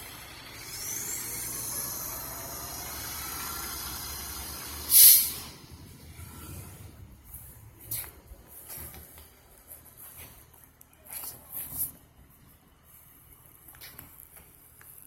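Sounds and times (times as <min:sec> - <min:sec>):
low engine idle: 0:00.0 - 0:07.8
air brakes hissing: 0:00.1 - 0:08.1.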